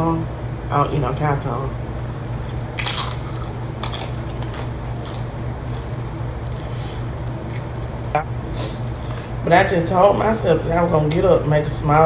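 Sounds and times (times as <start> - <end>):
steady low hum: 0.0 - 12.0
chips crunching while chewed: 2.8 - 8.0.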